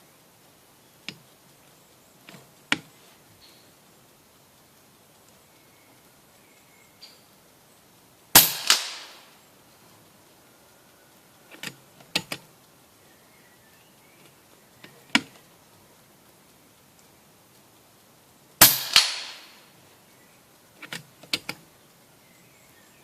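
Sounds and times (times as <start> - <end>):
air rifle shot: 8.4 - 9.3, 18.6 - 19.6
light clicks: 11.5 - 12.8, 20.8 - 22.0.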